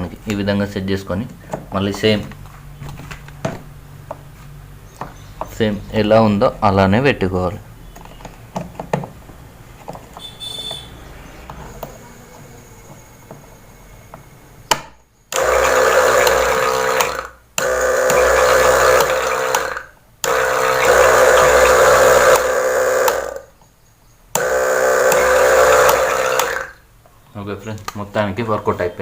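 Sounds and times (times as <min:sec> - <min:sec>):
electric pump humming: 0:15.3 - 0:23.6, 0:24.3 - 0:26.8.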